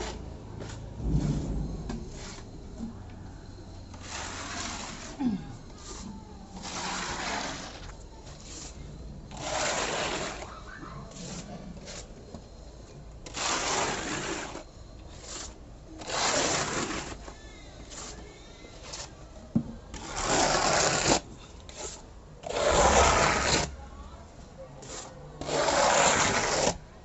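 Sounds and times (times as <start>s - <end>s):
hand tool scraping a wall: 3.9s - 12.2s, 13.2s - 17.3s, 19.9s - 23.8s, 24.8s - 26.8s.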